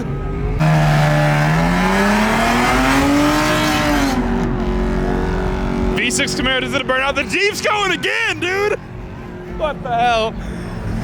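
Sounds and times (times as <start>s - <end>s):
car engine revving: 0.3s - 8.4s
spinning tyres hissing: 0.6s - 4.3s.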